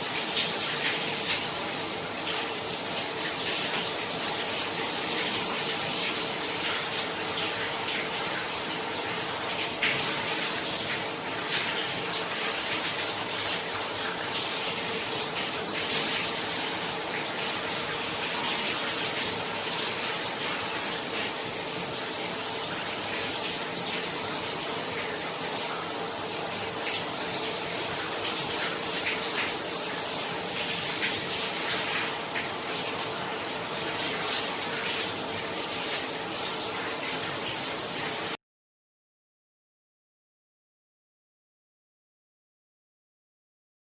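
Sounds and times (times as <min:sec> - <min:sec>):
shower water running: 0:00.0 - 0:38.4.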